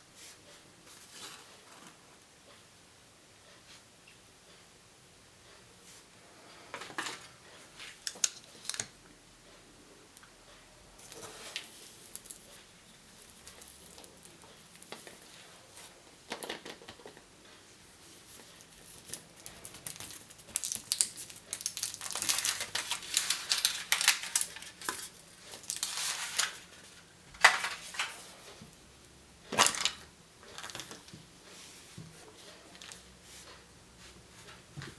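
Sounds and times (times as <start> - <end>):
wrappers crinkling and tearing: 18.9 - 28.3.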